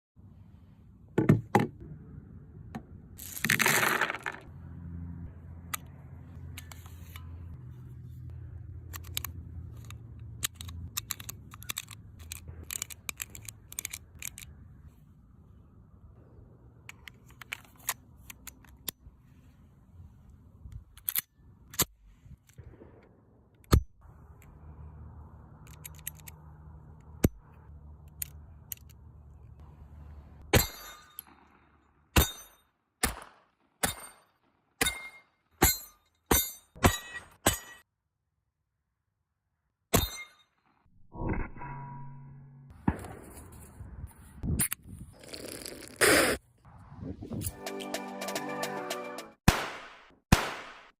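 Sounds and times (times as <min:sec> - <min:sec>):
metal scrape: 0:06.4 - 0:08.3
metallic clicks of pistol handling: 0:08.8 - 0:14.6, 0:16.8 - 0:19.0, 0:20.7 - 0:22.6, 0:25.5 - 0:27.4, 0:28.0 - 0:29.0.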